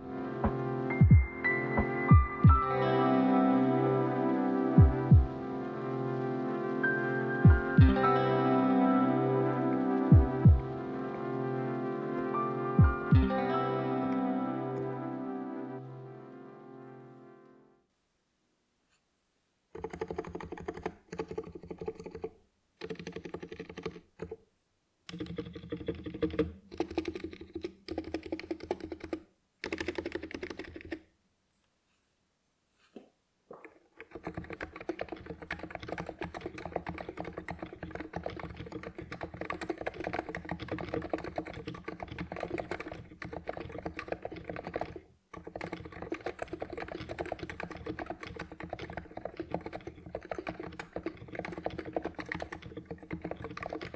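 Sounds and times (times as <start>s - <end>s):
keyboard typing: 0.0s - 15.1s, 19.7s - 24.4s, 25.1s - 31.1s, 33.5s - 53.9s.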